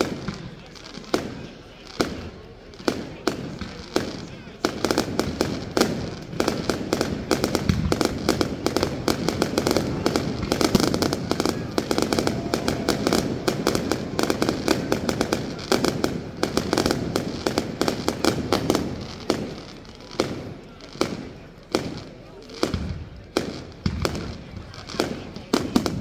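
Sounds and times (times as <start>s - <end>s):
fireworks bangs and crackling: 0.0s - 26.0s.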